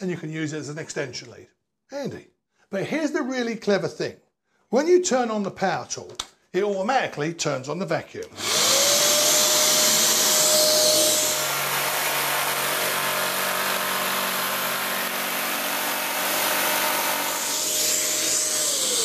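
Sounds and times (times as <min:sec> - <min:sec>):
power tool running: 0:08.3 - 0:19.0
vacuum cleaner whine: 0:08.3 - 0:19.0.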